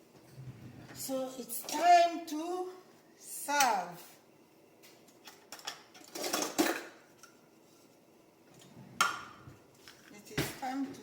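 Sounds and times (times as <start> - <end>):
kitchenware clinking: 5.2 - 7.4.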